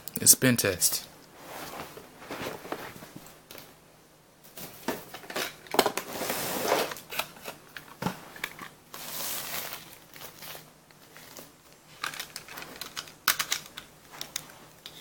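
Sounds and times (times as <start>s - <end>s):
plastic clicks and rattles: 12.0s - 15.0s.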